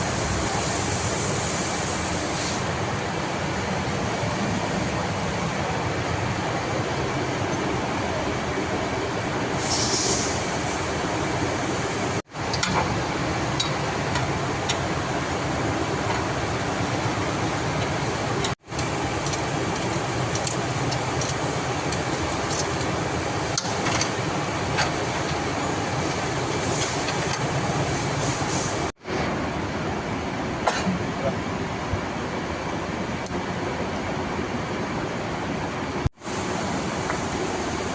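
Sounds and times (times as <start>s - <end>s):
machinery running: 11.3s - 28.9s.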